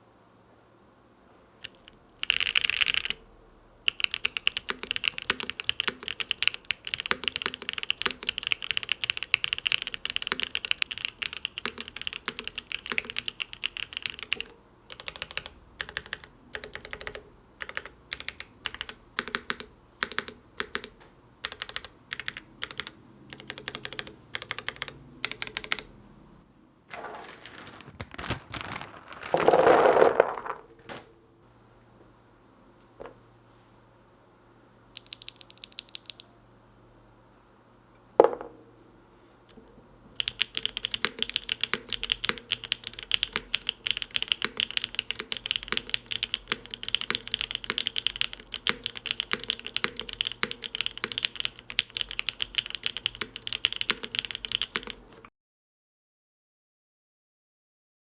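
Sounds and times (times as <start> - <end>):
mechanical keyboard typing: 1.6 - 3.2, 3.9 - 25.9, 35.0 - 36.3, 40.2 - 55.3.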